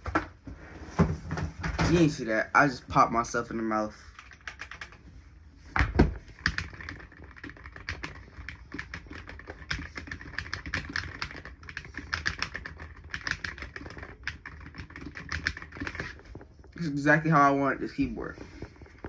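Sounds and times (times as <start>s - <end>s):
mechanical keyboard keys clacking: 4.2s - 5.0s, 6.4s - 16.2s.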